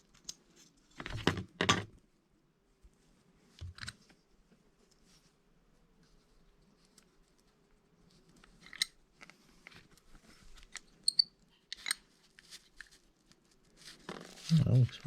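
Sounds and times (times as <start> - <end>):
small parts clicking and scraping: 8.3 - 9.8, 10.5 - 13.0.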